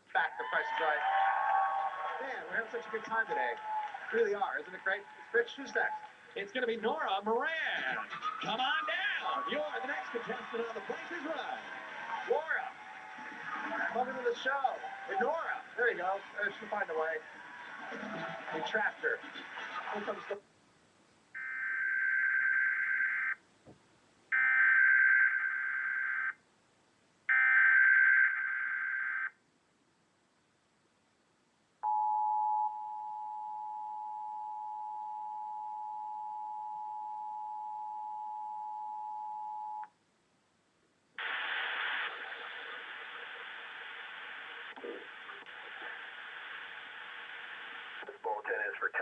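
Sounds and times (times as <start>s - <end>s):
hissing noise: 41.2s - 48.2s.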